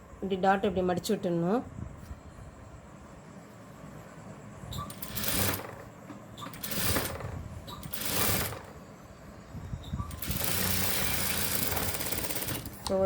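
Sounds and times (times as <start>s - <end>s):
sewing machine stitching: 4.9s - 5.8s, 6.4s - 8.8s, 10.1s - 13.0s.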